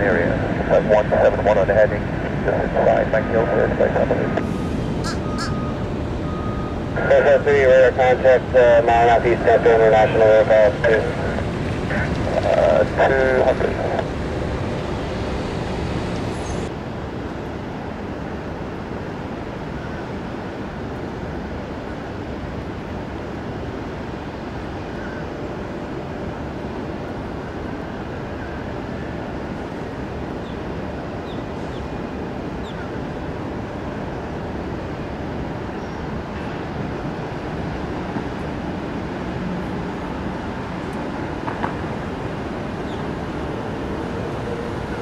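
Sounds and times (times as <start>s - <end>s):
aircraft engines rumbling: 0.0s - 45.0s.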